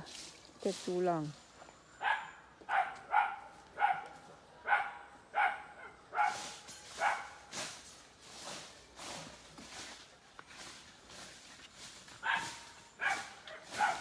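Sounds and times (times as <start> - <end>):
dog barking: 2.0 - 6.4, 7.0 - 7.4, 12.2 - 14.0.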